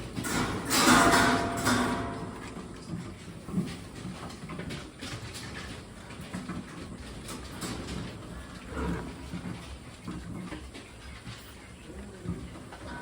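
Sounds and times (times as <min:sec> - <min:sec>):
pig grunting softly: 0:08.2 - 0:09.8.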